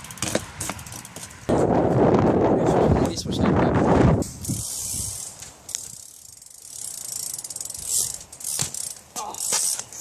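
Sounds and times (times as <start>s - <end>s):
bike freewheel ticking: 0.0s - 1.3s, 4.2s - 10.0s.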